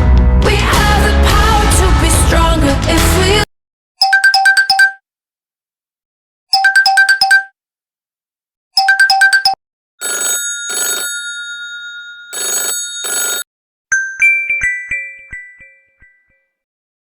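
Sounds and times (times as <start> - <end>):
bright chime ringtone: 4.0 - 5.0, 6.6 - 7.5, 8.8 - 16.6
two-part phone ring: 4.0 - 5.0, 6.6 - 7.5, 8.8 - 13.5
rapid electronic beeps: 6.6 - 7.5.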